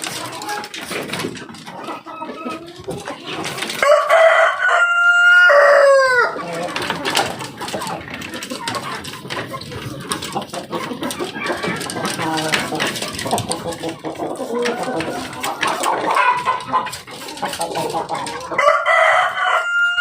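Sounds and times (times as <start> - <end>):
hens clucking: 0.0 - 20.0
rooster crowing: 3.8 - 6.4, 18.6 - 20.0.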